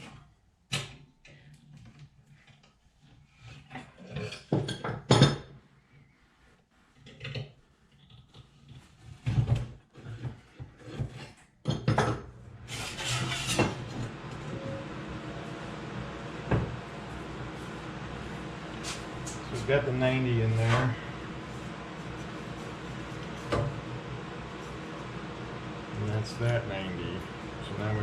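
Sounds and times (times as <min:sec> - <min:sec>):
sheet metal and tools clanking: 0:12.7 - 0:14.6.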